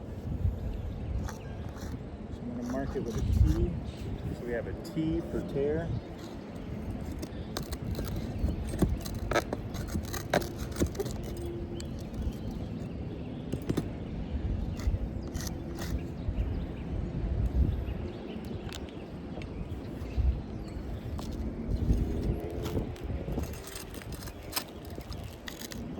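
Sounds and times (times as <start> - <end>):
wind rumble on microphone: 0.0 - 25.9
tools scraping roof shingles: 1.2 - 14.0, 14.7 - 16.1, 21.0 - 25.9.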